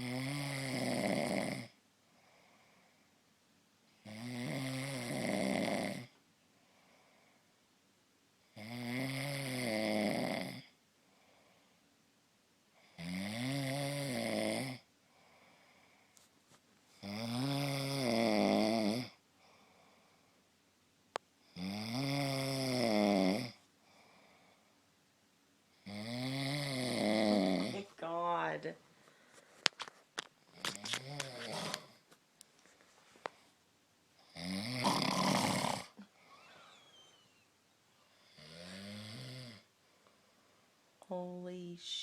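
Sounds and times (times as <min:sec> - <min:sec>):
person snoring: 0:00.0 - 0:01.8, 0:04.0 - 0:06.1, 0:08.6 - 0:10.7, 0:17.0 - 0:19.2, 0:21.5 - 0:23.6, 0:25.8 - 0:27.8, 0:30.5 - 0:32.0, 0:34.2 - 0:37.5, 0:38.1 - 0:39.7
quiet breathing: 0:01.6 - 0:03.3, 0:05.3 - 0:07.7, 0:10.5 - 0:12.0, 0:14.8 - 0:17.5, 0:19.1 - 0:20.6, 0:23.4 - 0:25.0, 0:28.8 - 0:33.6, 0:35.8 - 0:41.0.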